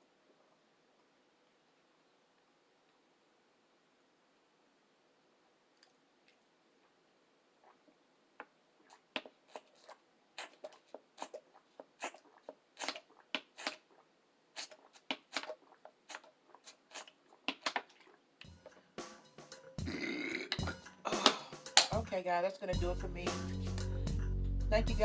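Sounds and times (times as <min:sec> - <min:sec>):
close chewing with mouth clicks: 0:08.8 - 0:18.6.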